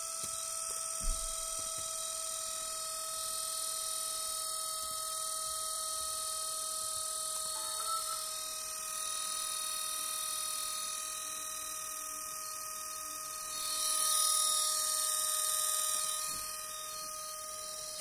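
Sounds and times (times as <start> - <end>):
laptop fan whining: 0.0 - 18.0.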